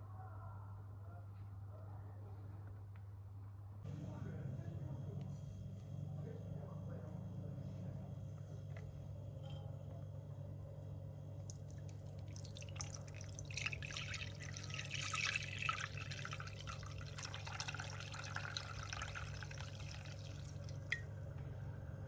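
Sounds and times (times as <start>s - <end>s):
steady low hum: 0.4s - 22.0s
liquid pouring into container: 11.4s - 21.1s.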